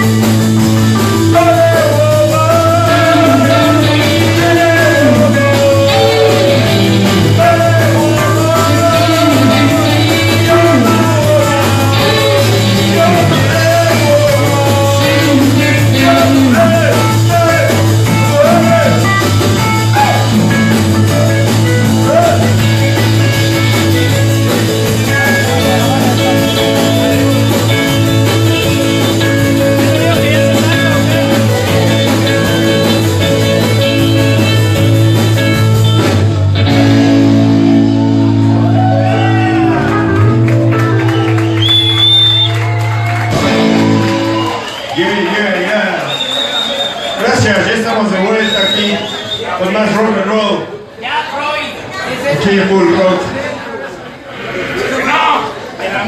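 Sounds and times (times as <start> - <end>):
live rock band playing: 0.0 - 50.9
person singing: 0.9 - 23.1, 24.8 - 35.7.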